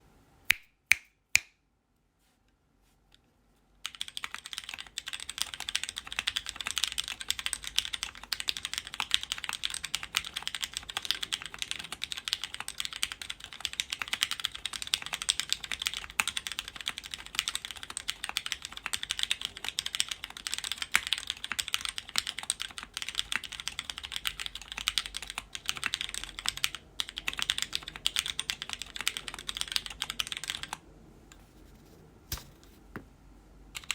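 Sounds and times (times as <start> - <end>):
mechanical keyboard typing: 3.8 - 30.8.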